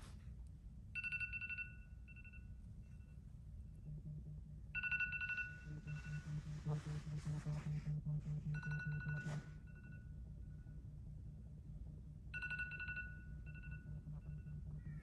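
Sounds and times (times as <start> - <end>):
low regular pulsing: 0.9 - 15.0
trilling two-tone electronic ring: 1.0 - 3.2, 4.8 - 6.4, 8.5 - 10.2, 12.3 - 14.7.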